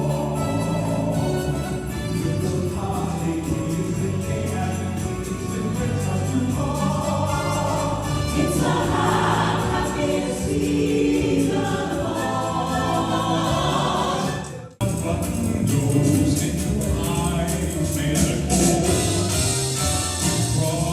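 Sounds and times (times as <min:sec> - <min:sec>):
choir singing sustained chords: 0:06.2 - 0:14.5.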